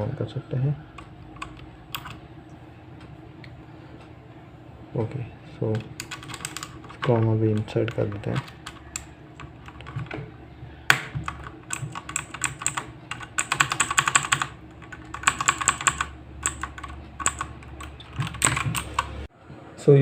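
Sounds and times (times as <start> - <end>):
mechanical keyboard key clicks: 1.0 - 2.2, 10.9 - 19.1.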